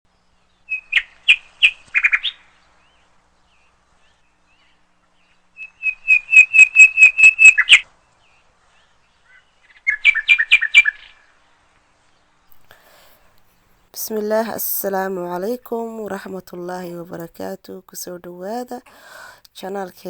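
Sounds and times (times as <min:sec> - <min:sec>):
bird trilling song: 0:00.4 - 0:11.3.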